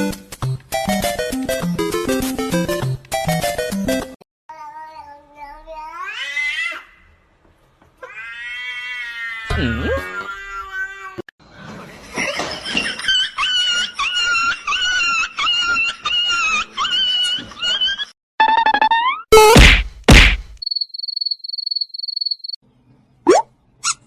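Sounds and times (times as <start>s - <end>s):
cat meowing and yowling: 8.0s - 11.2s.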